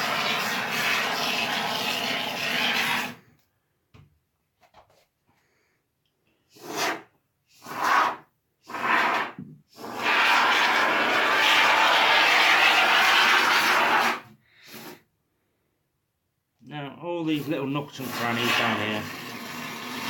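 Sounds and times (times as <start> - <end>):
expanding foam spraying hiss: 0.0 - 3.2, 8.7 - 15.0.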